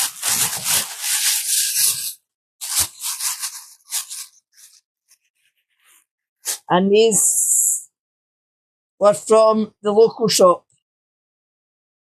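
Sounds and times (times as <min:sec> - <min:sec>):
food packaging crinkling and tearing: 0:00.0 - 0:05.2.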